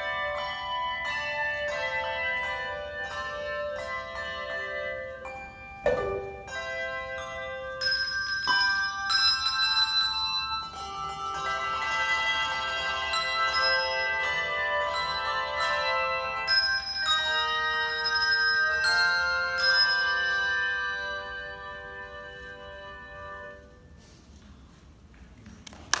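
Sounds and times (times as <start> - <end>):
handbell choir ringing chords: 5.9 - 6.7.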